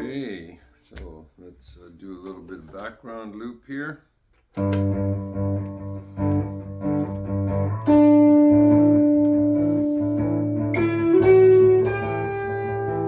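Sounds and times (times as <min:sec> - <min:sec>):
electric guitar playing: 0:04.6 - 0:13.0.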